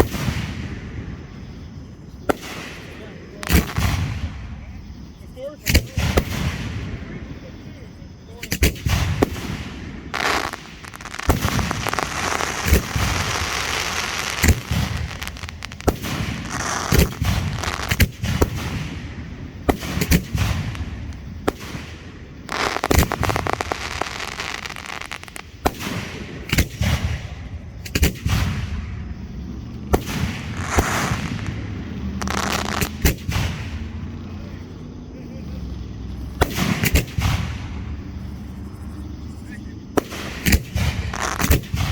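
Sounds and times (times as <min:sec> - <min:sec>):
firework crackling and hissing: 0:00.0 - 0:01.3, 0:01.9 - 0:04.7, 0:08.4 - 0:29.1, 0:29.8 - 0:34.2, 0:36.4 - 0:38.0, 0:39.4 - 0:41.9
firework bursts and bangs: 0:00.0 - 0:34.9, 0:35.6 - 0:38.5, 0:39.9 - 0:41.9.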